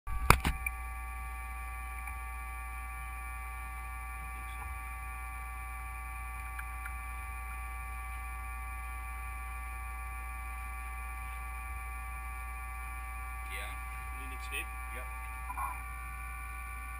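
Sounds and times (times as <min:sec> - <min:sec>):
electric motor humming and whining: 0:00.1 - 0:16.9
faint ticks: 0:01.9 - 0:02.2, 0:06.4 - 0:07.3.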